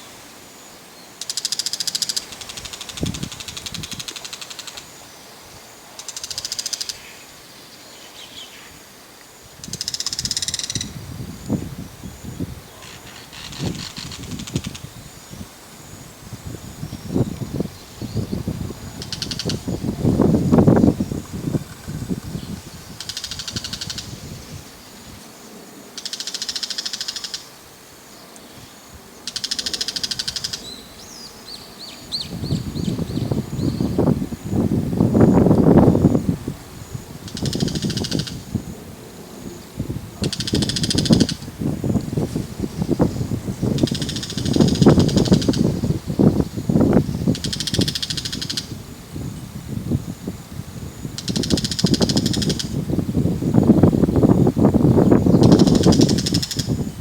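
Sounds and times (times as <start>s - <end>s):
bird harsh rattling call: 12.8s - 14.9s, 19.0s - 19.9s, 23.0s - 24.2s, 37.2s - 38.4s, 40.2s - 41.4s, 43.6s - 46.0s, 47.2s - 48.8s, 51.2s - 52.8s, 55.4s - 56.8s.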